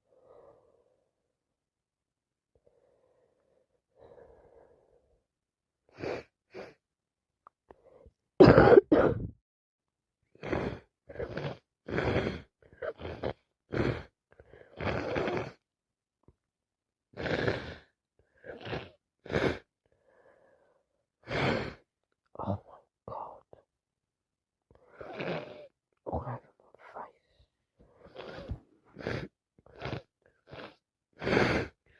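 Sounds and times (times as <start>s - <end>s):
woman coughing: 8.4s - 9.3s.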